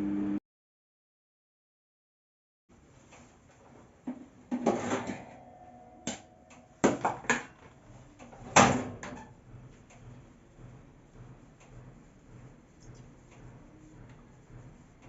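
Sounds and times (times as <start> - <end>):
household objects knocking and clattering: 6.1 - 9.2.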